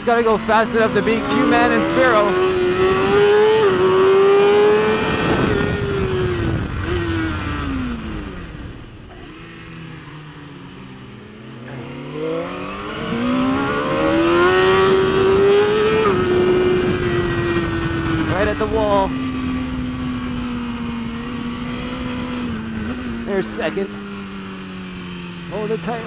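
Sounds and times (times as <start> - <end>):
motorcycle engine revving: 0.0 - 26.0
wind rush: 0.2 - 9.0, 11.8 - 23.2.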